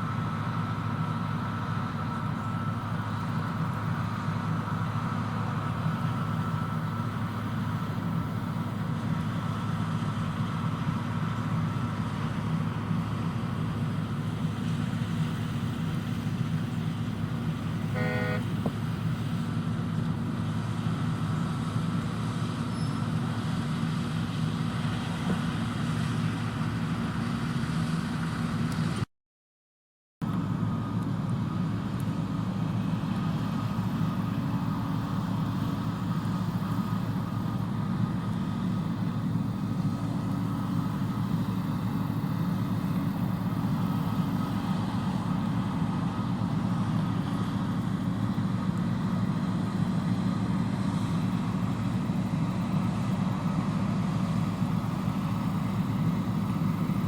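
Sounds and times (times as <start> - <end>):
combine harvester engine drone: 0.0 - 29.1, 30.2 - 57.0.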